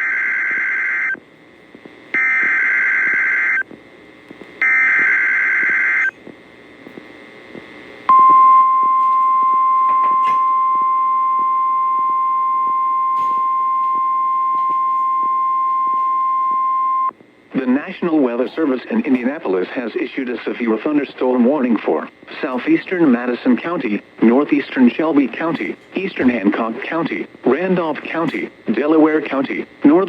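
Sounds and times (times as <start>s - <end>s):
steady warning alarm tone: 0.0s - 1.2s, 2.1s - 3.7s, 4.6s - 6.2s, 8.1s - 17.1s
screeching two-tone data bursts: 2.2s - 3.6s, 4.6s - 6.2s, 8.1s - 17.1s.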